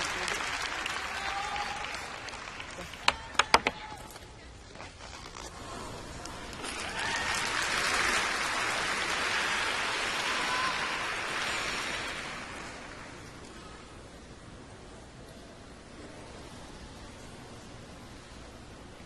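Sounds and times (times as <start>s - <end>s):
audience applauding and cheering: 0.0s - 3.8s, 6.5s - 13.5s.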